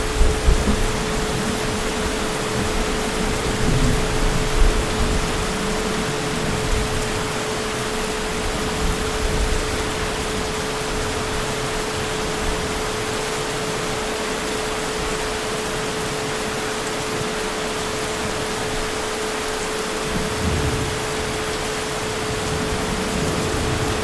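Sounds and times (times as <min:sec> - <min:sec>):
distant thunder rumble: 0:00.0 - 0:12.8, 0:20.0 - 0:24.0
heavy rain falling: 0:00.0 - 0:24.0.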